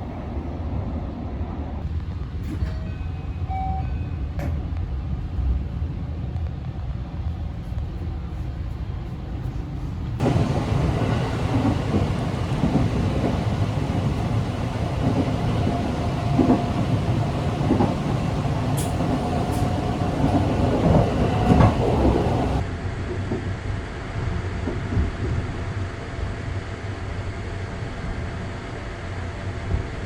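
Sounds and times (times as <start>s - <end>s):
train wheels rumbling on rail: 0.0s - 22.7s.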